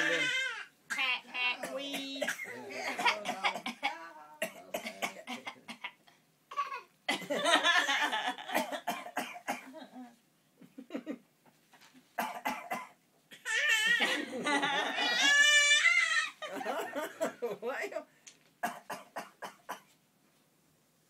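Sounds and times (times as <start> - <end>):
child fake coughing: 0.9 - 7.3
child laughing: 13.7 - 16.5.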